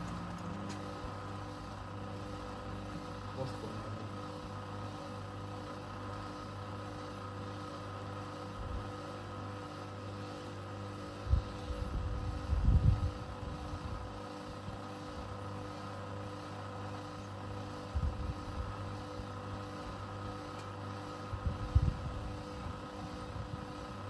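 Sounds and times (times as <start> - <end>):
washing machine spinning: 0.0 - 24.0.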